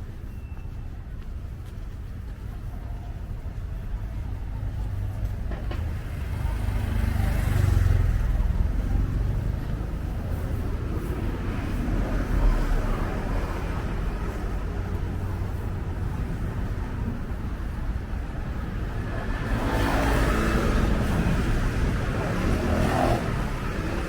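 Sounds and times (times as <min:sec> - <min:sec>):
traffic rumble: 0:00.0 - 0:24.0
vehicle passing close by: 0:18.5 - 0:24.0.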